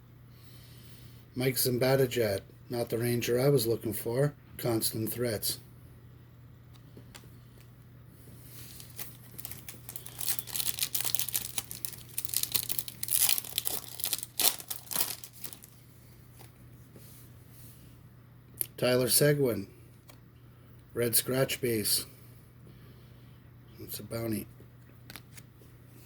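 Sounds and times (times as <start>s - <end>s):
card pack wrapper crinkling: 8.6s - 15.8s.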